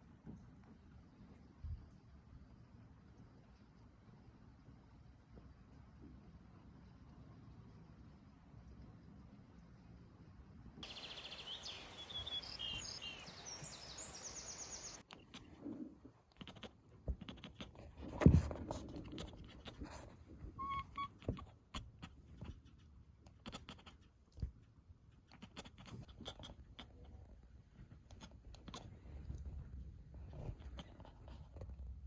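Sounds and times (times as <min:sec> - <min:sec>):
outdoor background noise: 0:00.0 - 0:32.0
small birds chirping: 0:10.8 - 0:15.5.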